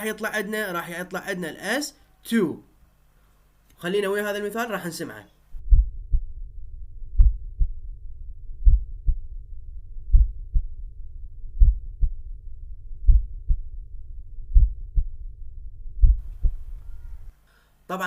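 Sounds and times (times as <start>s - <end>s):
heartbeat lub dub: 5.6s - 6.4s, 7.1s - 7.8s, 8.5s - 9.3s, 10.0s - 10.9s, 11.5s - 12.4s, 13.0s - 13.8s, 14.4s - 15.3s, 15.9s - 16.8s.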